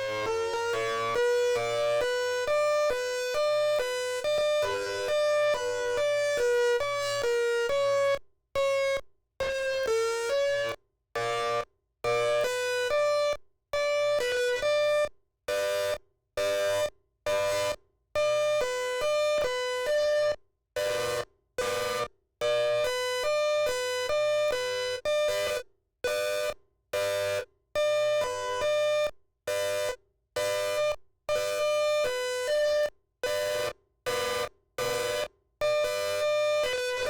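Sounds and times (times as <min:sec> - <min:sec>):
buzzy electronic siren: 0:00.0 - 0:02.5, 0:04.6 - 0:06.0.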